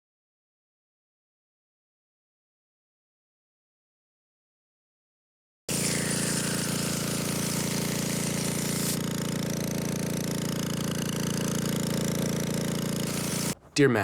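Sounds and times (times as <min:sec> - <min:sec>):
engine running steadily: 0:05.7 - 0:13.7
high hiss: 0:13.1 - 0:13.6.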